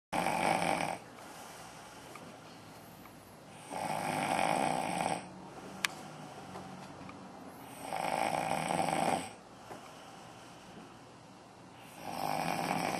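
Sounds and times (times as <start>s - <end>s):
person snoring: 0.2s - 1.1s, 3.5s - 5.3s, 7.6s - 9.4s, 11.8s - 12.9s
quiet breathing: 0.6s - 8.4s, 9.2s - 12.9s.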